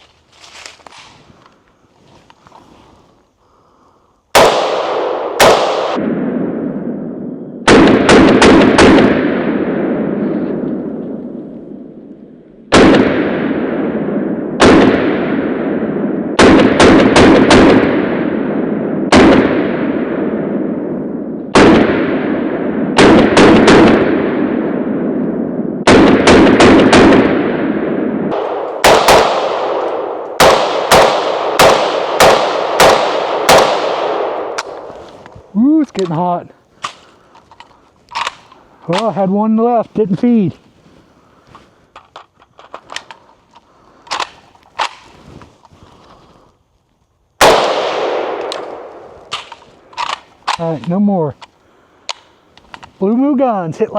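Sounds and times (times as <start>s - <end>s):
rifle gunshots with echo: 4.3s - 12.1s, 12.7s - 35.6s, 47.4s - 51.3s.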